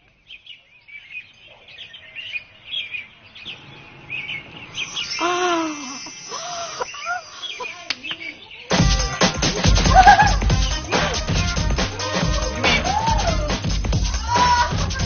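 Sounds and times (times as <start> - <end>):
birds chirping: 0.0 - 14.2
voice-like calls rising and falling: 3.5 - 8.5.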